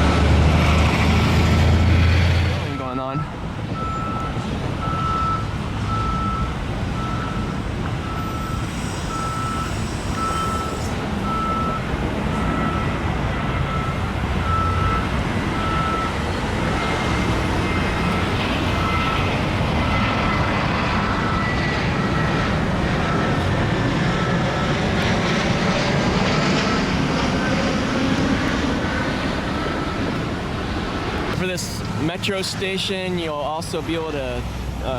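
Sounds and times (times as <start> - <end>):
low rumble of engines and traffic: 0.0 - 34.9
reversing alarm beeping: 2.6 - 30.3.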